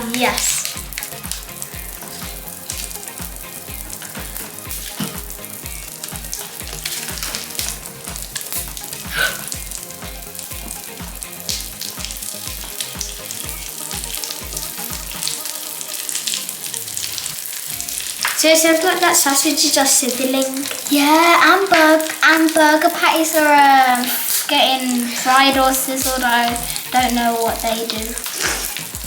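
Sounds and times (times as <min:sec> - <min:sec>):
background music with low beat: 0:00.0 - 0:19.5, 0:25.4 - 0:29.0
popping candy crackling: 0:00.0 - 0:29.0.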